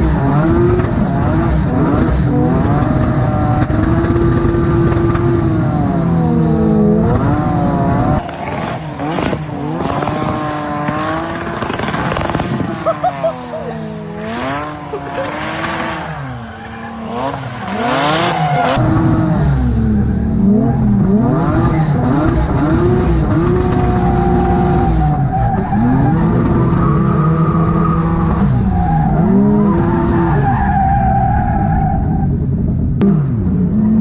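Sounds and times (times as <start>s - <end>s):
car engines revving: 0.0s - 34.0s
tyre squeal: 23.8s - 32.4s.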